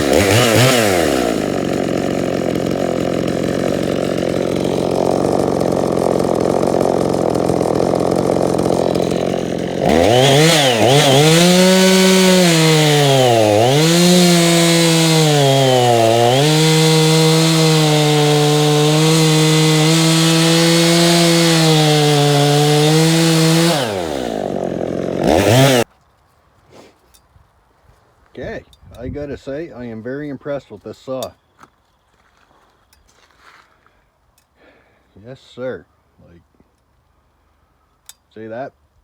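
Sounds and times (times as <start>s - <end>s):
chainsaw cutting wood: 0.0s - 25.9s.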